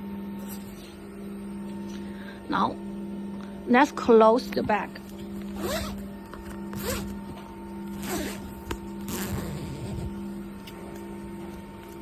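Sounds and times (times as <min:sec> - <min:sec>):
steady low hum: 0:00.0 - 0:12.0
zipper being pulled: 0:05.5 - 0:06.0, 0:06.7 - 0:07.2, 0:07.9 - 0:10.3.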